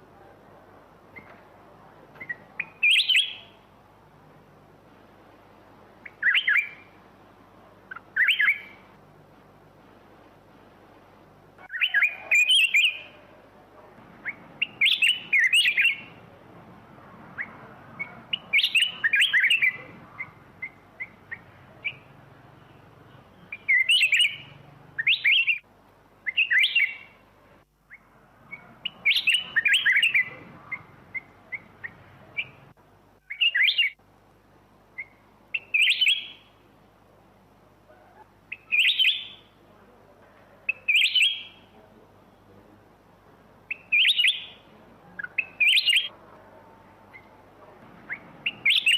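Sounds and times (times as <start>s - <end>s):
bird warbling song: 2.2s - 3.6s, 6.0s - 7.0s, 7.9s - 8.9s, 11.6s - 13.4s, 14.2s - 16.3s, 17.4s - 25.6s, 26.3s - 27.2s, 27.9s - 34.0s, 35.0s - 36.5s, 37.9s - 39.5s, 40.7s - 41.8s, 43.7s - 44.6s, 45.2s - 46.2s, 48.0s - 48.9s.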